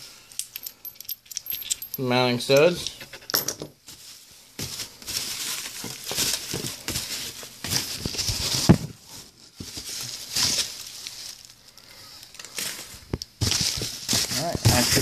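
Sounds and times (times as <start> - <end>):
hands rustling shredded paper: 3.9 - 11.6, 12.5 - 15.0.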